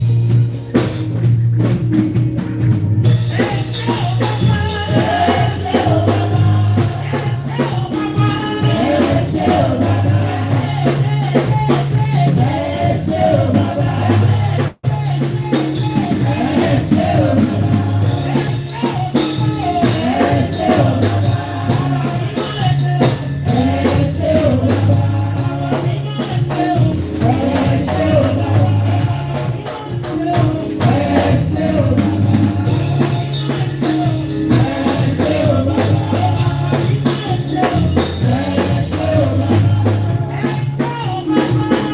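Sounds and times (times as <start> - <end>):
bouncing bass line: 0.0 - 15.0
tambourine and percussion: 0.0 - 41.9
choir singing: 3.3 - 41.9.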